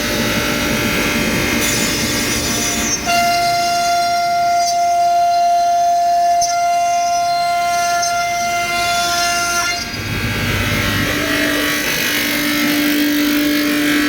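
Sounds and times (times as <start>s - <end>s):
router spindle whining: 0.0s - 14.0s
rough cutting noise: 6.4s - 14.0s.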